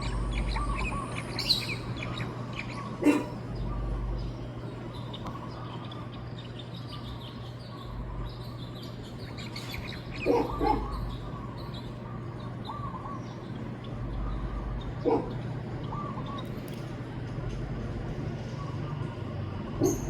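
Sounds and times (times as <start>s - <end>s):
birds chirping: 0.0s - 20.0s
lower bird calls: 0.0s - 20.0s
steady low hum: 0.0s - 20.0s.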